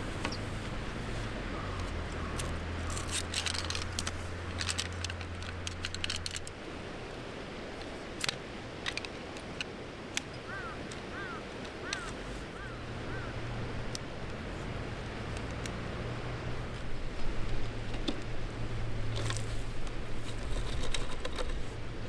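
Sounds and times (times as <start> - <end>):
low steady hum: 0.0 - 22.0
sharp clicks and light clinks: 1.7 - 6.8, 7.7 - 12.2.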